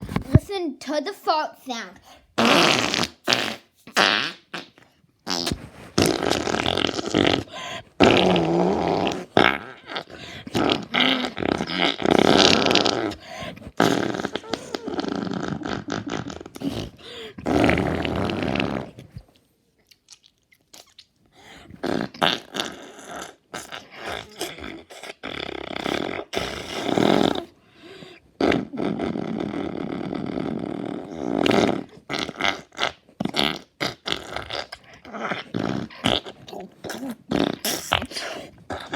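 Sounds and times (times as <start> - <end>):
rough fart sounds: 2.4 - 19.3, 21.6 - 38.9.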